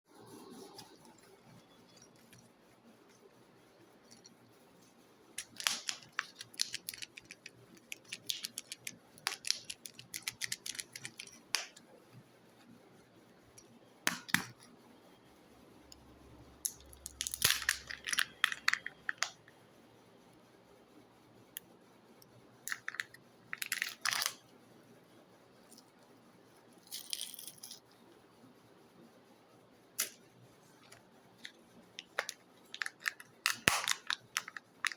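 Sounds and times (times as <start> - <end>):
foil and plastic wrapper crinkling: 5.4 - 11.4, 32.0 - 34.9
small plastic clicks: 30.8 - 34.9.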